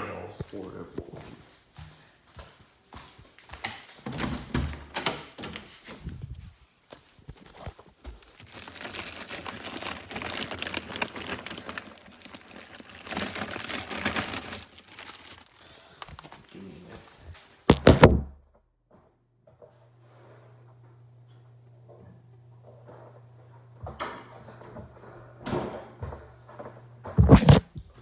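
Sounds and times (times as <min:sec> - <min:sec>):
rustling and crinkling: 0:05.6 - 0:18.4, 0:27.2 - 0:28.0
kitchen items knocking: 0:17.7 - 0:18.4.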